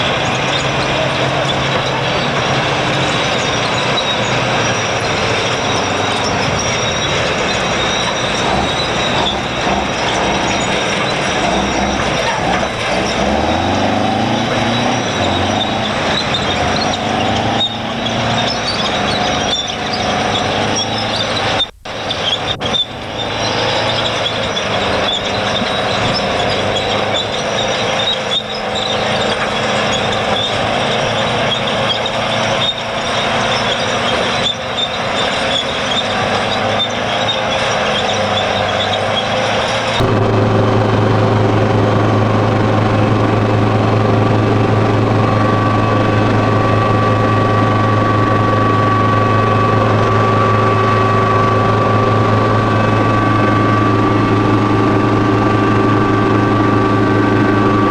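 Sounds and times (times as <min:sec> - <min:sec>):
thin high whine: 0:00.0 - 0:33.2
diesel engine drone: 0:00.0 - 0:57.9
diesel machinery working: 0:00.0 - 0:57.9.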